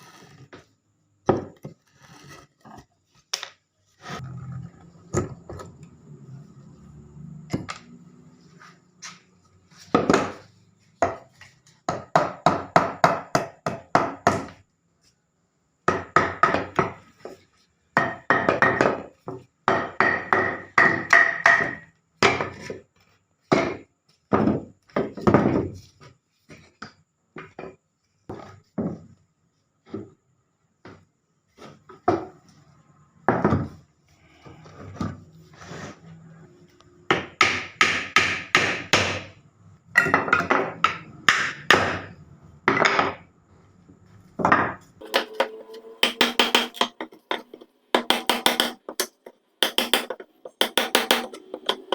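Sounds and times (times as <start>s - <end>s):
hand tool knocking on wood: 45.0s - 51.9s.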